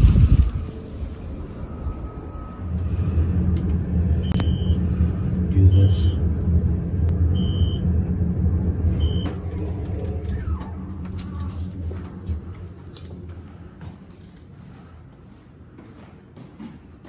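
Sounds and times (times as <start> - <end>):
large vehicle rumbling: 0.0 - 14.9
short electronic beeps: 4.2 - 4.8, 5.7 - 6.2, 7.4 - 7.8, 9.0 - 9.4.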